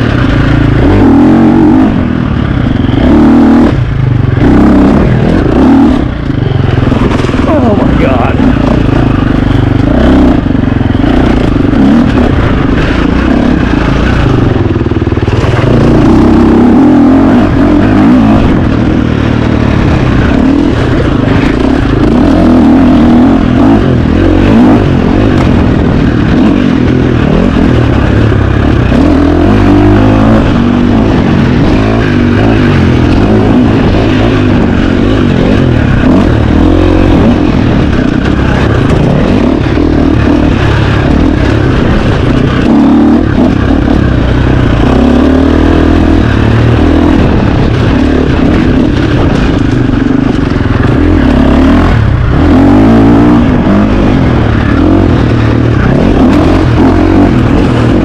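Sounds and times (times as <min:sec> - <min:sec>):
dirt bike engine revving: 0:00.0 - 0:58.0
knocks and clatter: 0:06.8 - 0:09.1, 0:45.8 - 0:58.0.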